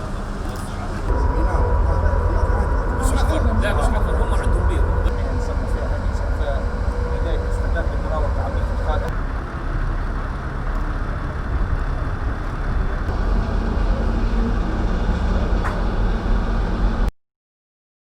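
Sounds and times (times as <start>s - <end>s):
faint hum: 0.0s - 11.4s
engines and machinery rumbling: 0.0s - 17.1s.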